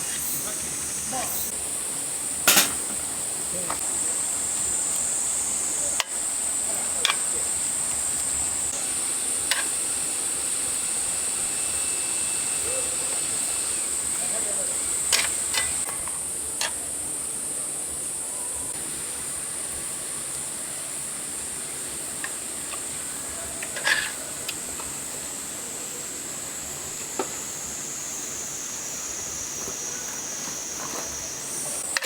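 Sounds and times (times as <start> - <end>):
summer insects droning: 0.0 - 32.0
tableware clinking: 2.5 - 3.1.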